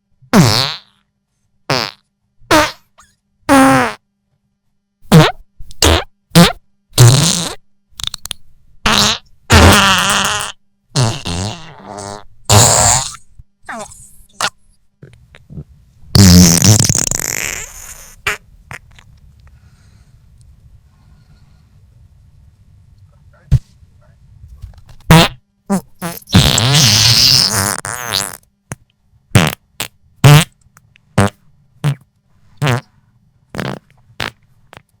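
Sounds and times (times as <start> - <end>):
comedy fart sounds: 0.3 - 1.1, 1.7 - 4.1, 5.0 - 19.1, 25.1 - 30.6, 31.2 - 32.9, 33.5 - 35.0.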